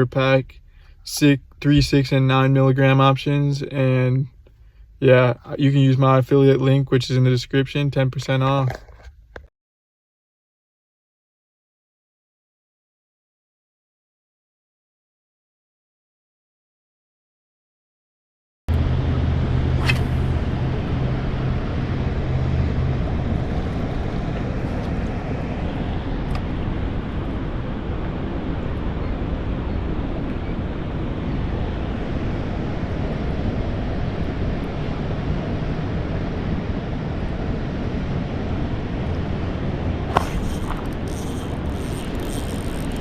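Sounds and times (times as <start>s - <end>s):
low hum: 0.0s - 8.8s, 18.7s - 43.0s
wind noise on microphone: 18.7s - 43.0s.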